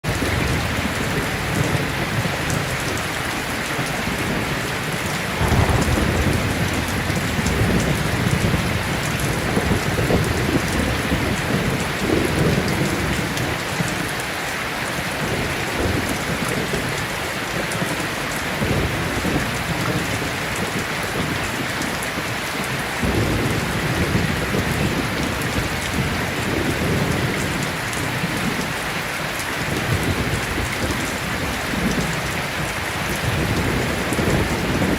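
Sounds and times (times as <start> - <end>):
heavy rain hissing: 0.1 - 34.9
rolling thunder: 4.0 - 13.6, 29.6 - 34.9.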